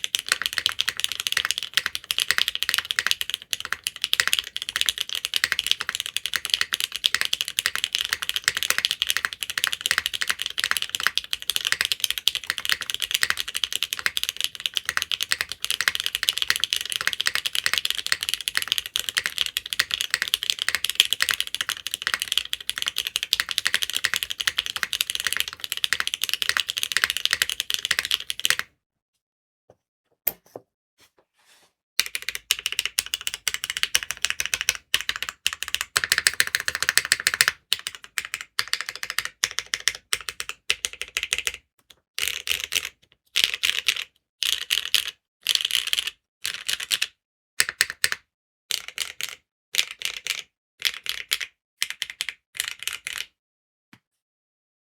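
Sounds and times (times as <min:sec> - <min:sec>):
mechanical keyboard typing: 0:00.0 - 0:28.7, 0:32.0 - 0:41.6, 0:42.2 - 0:53.3.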